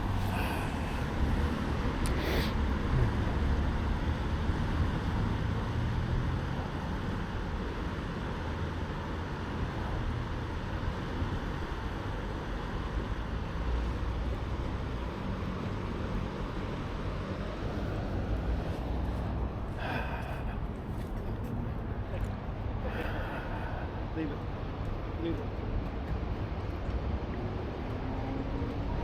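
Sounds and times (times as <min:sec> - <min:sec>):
floodwater rushing: 0:00.0 - 0:03.5.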